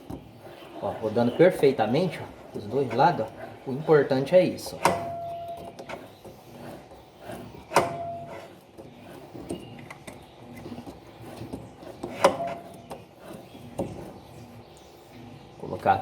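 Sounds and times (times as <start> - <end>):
sharp knocks of machine parts: 4.8 - 6.0, 7.7 - 8.2.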